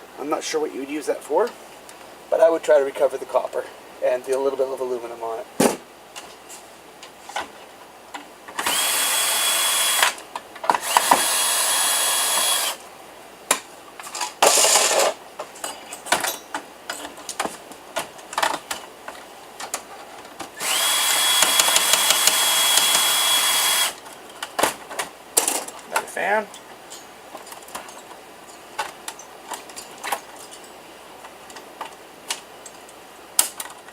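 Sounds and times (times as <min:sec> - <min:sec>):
electric drill motor whine: 0:08.6 - 0:10.2, 0:10.8 - 0:12.8, 0:20.6 - 0:24.0
small parts rattling: 0:14.0 - 0:17.2.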